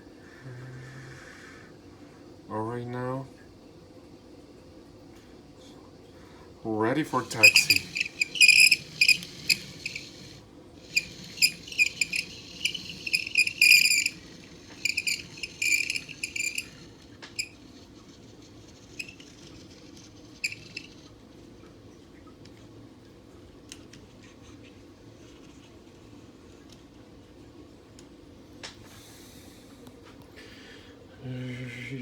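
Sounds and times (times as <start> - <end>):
toy electronic chirps: 7.2 - 17.6, 19.0 - 19.3, 20.4 - 20.9.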